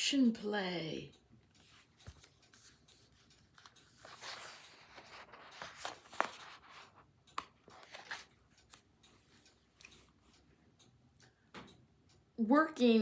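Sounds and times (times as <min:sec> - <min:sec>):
paper pages rustling: 0:01.7 - 0:08.8.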